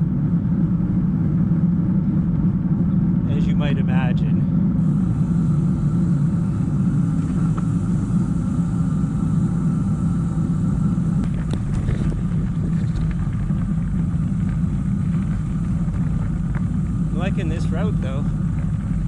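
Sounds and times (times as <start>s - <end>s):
wind rumble on microphone: 0.0s - 19.0s
bicycle tyre noise: 4.8s - 19.0s.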